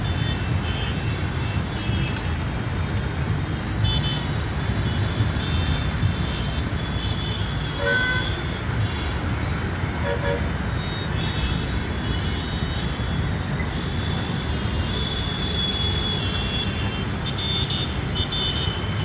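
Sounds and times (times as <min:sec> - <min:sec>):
traffic engines rumbling: 0:00.0 - 0:19.0.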